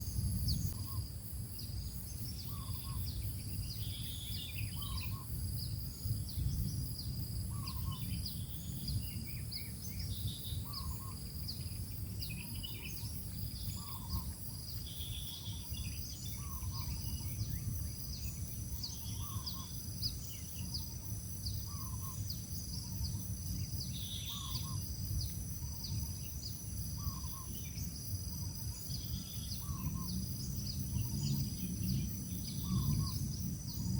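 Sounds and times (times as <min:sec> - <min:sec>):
birds chirping: 0:07.5 - 0:26.3.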